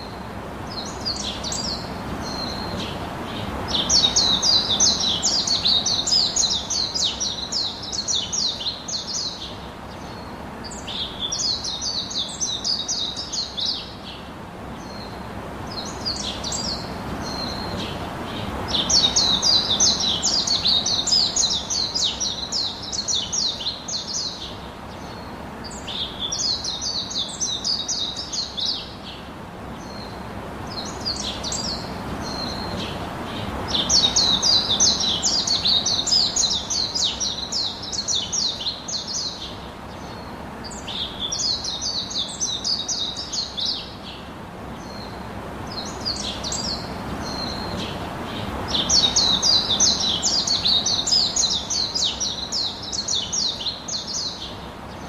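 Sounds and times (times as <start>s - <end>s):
steady background hiss: 0.0s - 55.0s
birds chirping: 0.7s - 55.0s.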